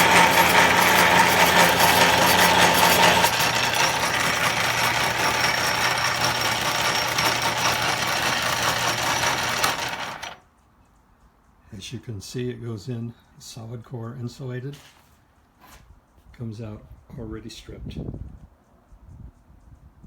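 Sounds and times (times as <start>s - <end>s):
electric motor mechanical whir: 0.0s - 10.4s.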